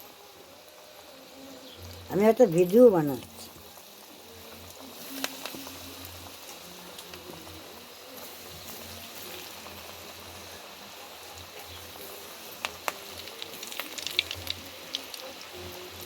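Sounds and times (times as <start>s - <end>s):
hot oil sizzling: 0.0s - 16.0s
oil popping and crackling: 1.7s - 16.0s.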